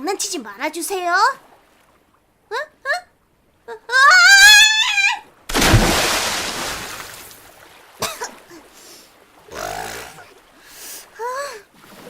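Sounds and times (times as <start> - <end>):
water splash: 5.5 - 8.6.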